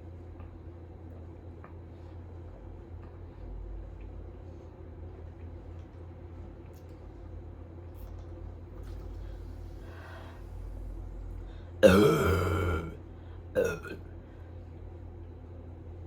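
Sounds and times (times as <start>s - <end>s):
man burping: 11.8s - 13.0s, 13.6s - 14.0s.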